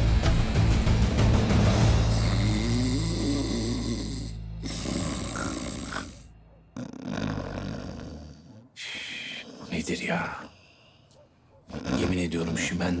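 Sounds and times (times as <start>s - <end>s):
man snoring loudly: 1.6s - 10.6s, 11.7s - 13.0s.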